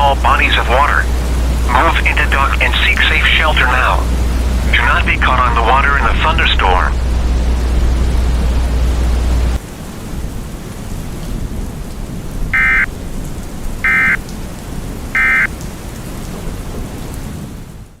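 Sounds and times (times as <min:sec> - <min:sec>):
steady rushing background: 0:00.0 - 0:16.8
digital data tone screech: 0:12.6 - 0:12.9.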